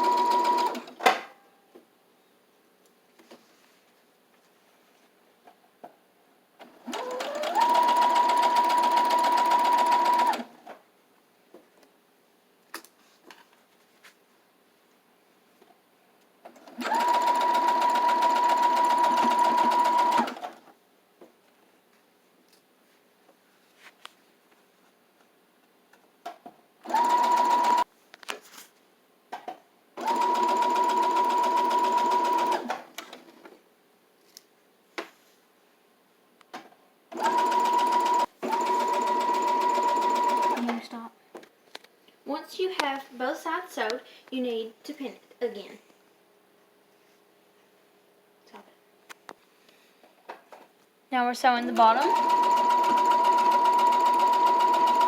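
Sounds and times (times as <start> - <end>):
sewing machine stitching: 0.0 - 1.0, 6.6 - 10.5, 16.5 - 20.6, 26.9 - 27.8, 30.0 - 33.4, 37.2 - 40.8, 51.6 - 55.0.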